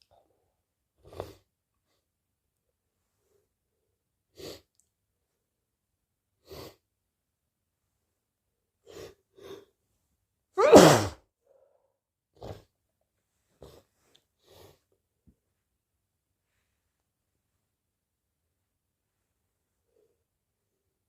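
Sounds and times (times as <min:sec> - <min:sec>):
person sneezing loudly: 0:10.6 - 0:11.2.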